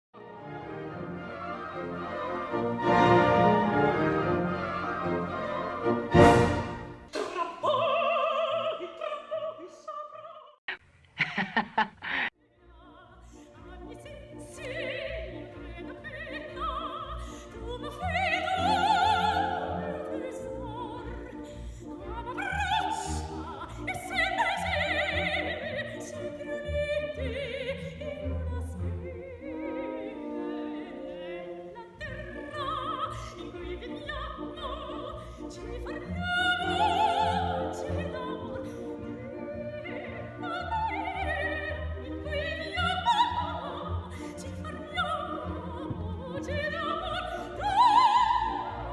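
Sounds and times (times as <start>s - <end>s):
orchestral accompaniment: 0.2s - 7.3s
operatic singing with vibrato: 0.3s - 10.6s, 12.6s - 48.9s.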